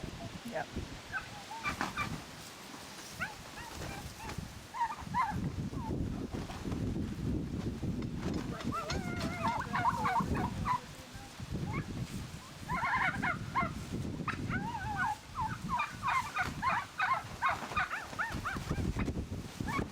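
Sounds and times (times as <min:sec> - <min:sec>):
turkeys calling: 0:01.1 - 0:06.0, 0:08.5 - 0:19.1.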